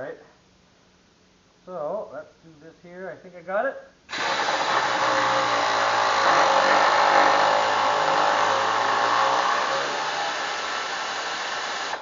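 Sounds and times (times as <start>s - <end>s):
power tool motor running under load: 4.1s - 12.0s.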